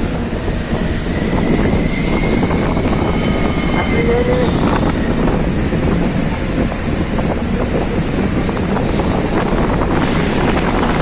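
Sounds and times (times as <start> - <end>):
heavy rain: 0.0 - 11.0
storm wind gusting: 0.0 - 11.0.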